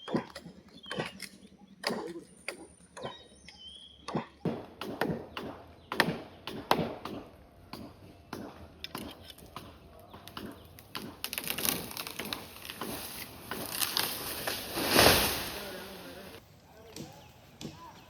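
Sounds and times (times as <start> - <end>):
blade chopping wood: 4.1 - 15.5
hissing rustle: 11.4 - 16.4.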